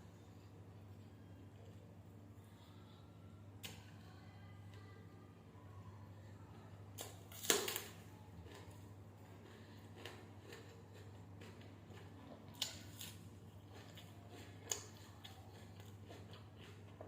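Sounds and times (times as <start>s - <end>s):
low steady hum: 0.0s - 17.0s
eating sounds: 8.4s - 17.0s.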